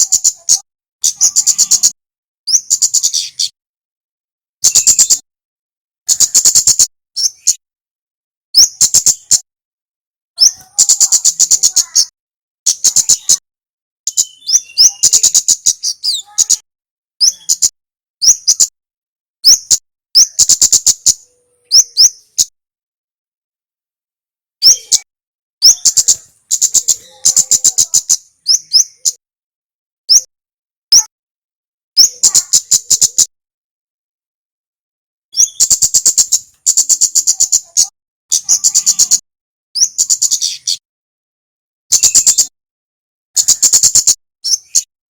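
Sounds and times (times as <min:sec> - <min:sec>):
songbird calling sharp chips: 0:00.0 - 0:03.6, 0:14.1 - 0:16.6, 0:19.4 - 0:22.5, 0:24.6 - 0:29.2, 0:35.4 - 0:39.2, 0:39.8 - 0:40.8, 0:42.0 - 0:42.5.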